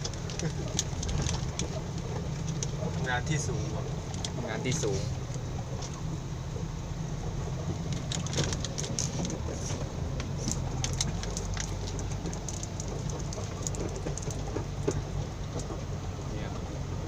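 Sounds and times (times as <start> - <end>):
cab rattles and knocks: 0.0 - 6.0, 7.6 - 15.9
diesel truck engine running: 0.0 - 17.0.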